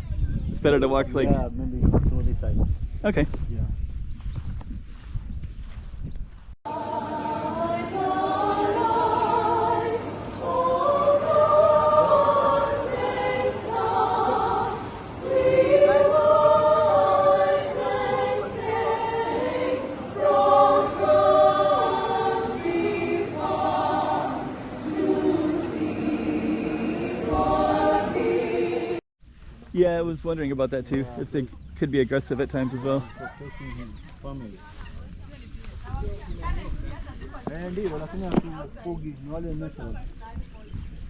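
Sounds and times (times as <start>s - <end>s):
choir singing in harmony: 6.7s - 29.0s.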